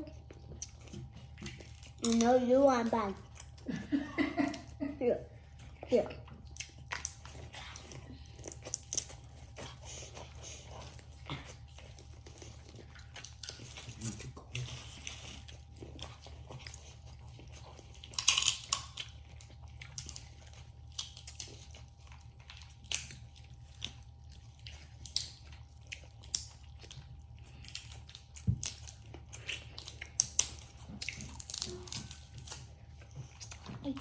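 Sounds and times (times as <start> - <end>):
person chewing and biting: 5.7 - 33.8
crab shells cracking: 18.0 - 19.2, 29.6 - 32.7.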